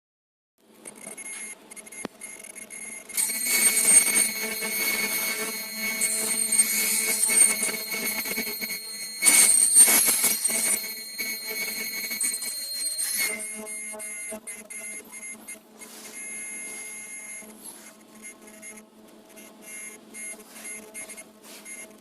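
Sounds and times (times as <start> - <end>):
sewing machine high-pitched whine: 1.8 - 17.6.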